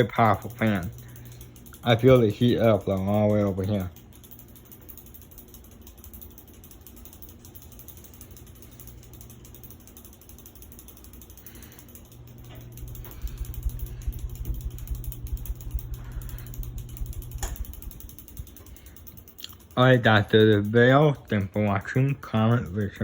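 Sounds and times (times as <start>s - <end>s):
ceiling fan motor hum: 0.0s - 23.0s.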